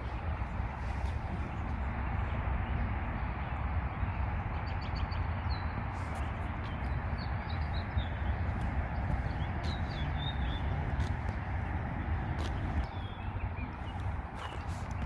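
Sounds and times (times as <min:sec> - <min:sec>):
rushing noise with low rumble: 0:00.0 - 0:15.0.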